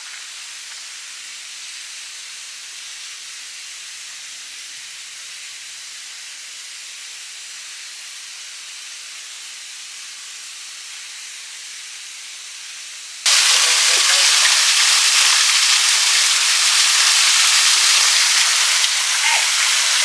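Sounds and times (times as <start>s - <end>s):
small waterfall hissing: 0.0s - 20.0s.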